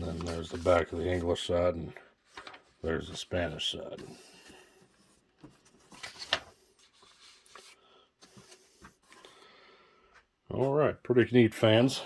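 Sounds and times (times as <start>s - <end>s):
paper pages rustling: 0.0s - 1.6s, 2.2s - 9.3s.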